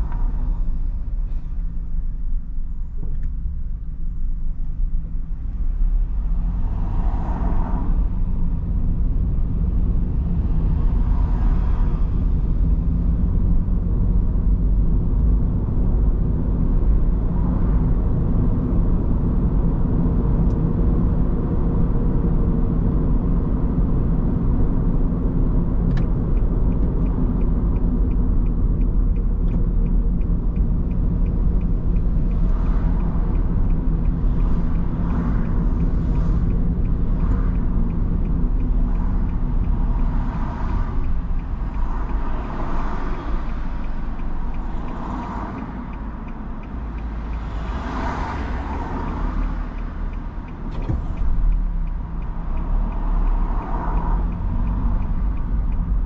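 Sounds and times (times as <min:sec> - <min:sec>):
car driving on road: 0:00.0 - 0:56.0
vehicles passing: 0:00.0 - 0:56.0
faint ticks: 0:25.8 - 0:56.0.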